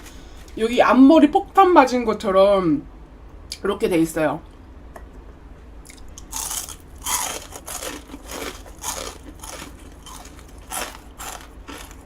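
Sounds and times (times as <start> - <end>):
crunchy food chewing: 5.8 - 12.0.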